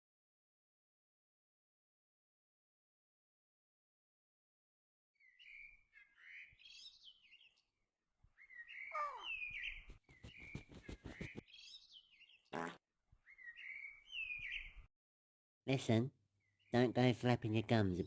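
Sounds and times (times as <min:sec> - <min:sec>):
birds chirping: 0:05.2 - 0:07.7, 0:08.3 - 0:14.9
bird rattling trill: 0:10.2 - 0:11.4.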